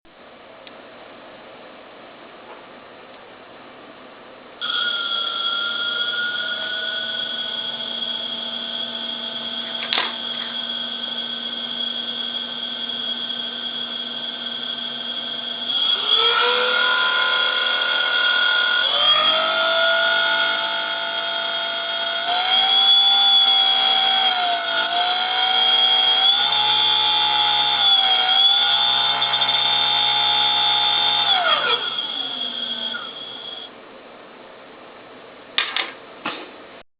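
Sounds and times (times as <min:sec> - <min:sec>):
milling machine spindle whine: 0:04.6 - 0:33.7.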